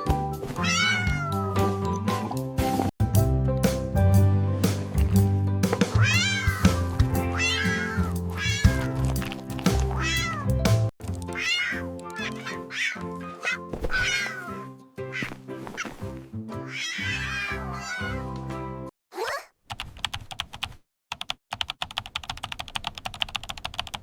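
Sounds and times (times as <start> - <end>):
background music with held notes: 0.0 - 18.9
cat meowing: 0.4 - 1.7, 5.9 - 9.0, 9.9 - 10.6, 11.3 - 16.0, 16.6 - 18.3, 19.2 - 19.5.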